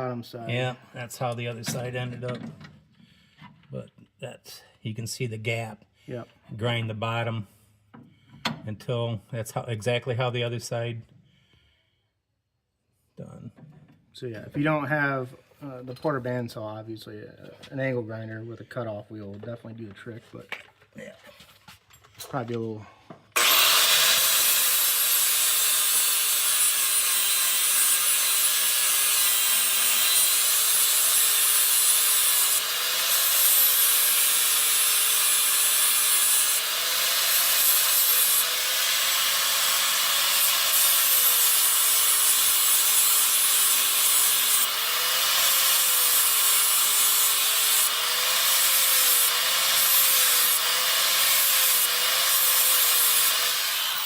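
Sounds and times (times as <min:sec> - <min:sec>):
electric grinder grinding metal: 0:23.4 - 0:54.0.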